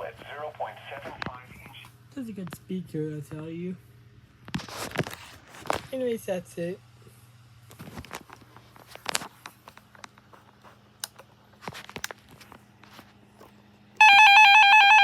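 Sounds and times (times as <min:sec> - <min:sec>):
two-pitch electronic alarm: 0:14.0 - 0:15.0.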